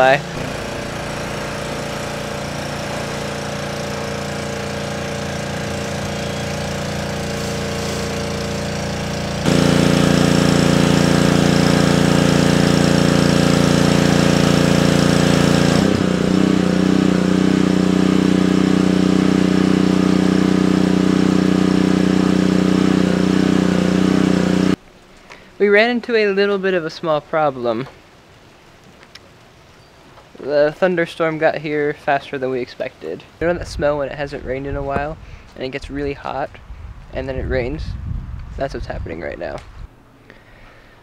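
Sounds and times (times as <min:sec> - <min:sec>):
small engine running: 0:00.0 - 0:24.8.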